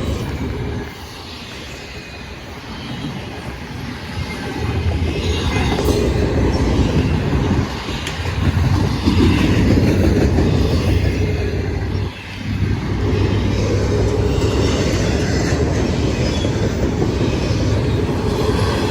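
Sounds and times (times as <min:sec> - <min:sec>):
train wheels clattering over rail joints: 0:05.1 - 0:18.9.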